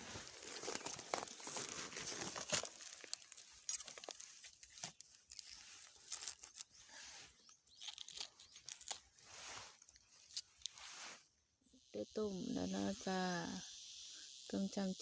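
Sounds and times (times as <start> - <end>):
leaves rustling and crinkling: 0.0 - 11.2
stems snapping and clicking: 0.4 - 6.8, 7.5 - 9.0.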